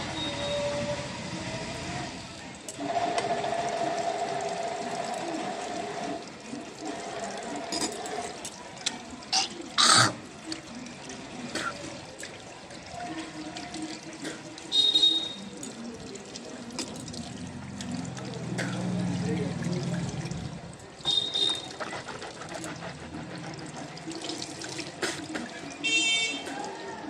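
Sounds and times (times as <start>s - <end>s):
tap water running into sink: 2.6s - 27.0s
person hawking and spitting: 9.3s - 10.3s.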